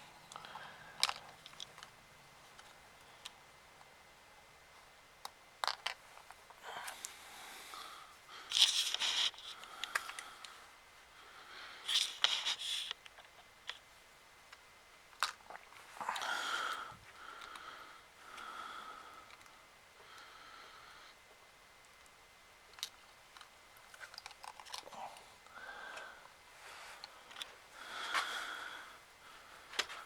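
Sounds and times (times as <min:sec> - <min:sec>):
plastic parts clicking: 0:00.3 - 0:01.9, 0:05.2 - 0:06.4, 0:08.5 - 0:10.3, 0:22.7 - 0:24.9.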